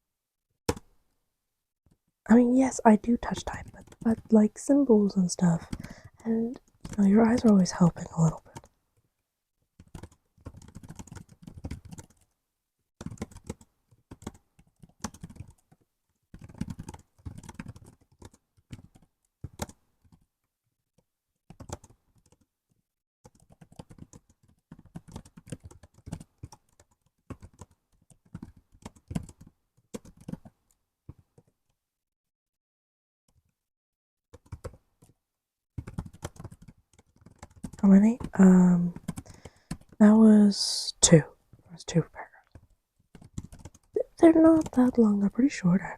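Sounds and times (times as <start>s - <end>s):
laptop keyboard typing: 0.7s - 1.0s, 2.4s - 4.8s, 5.5s - 8.8s, 9.8s - 12.4s, 13.0s - 20.3s, 21.0s - 31.8s, 34.3s - 35.2s, 35.8s - 40.0s, 42.4s - 45.1s.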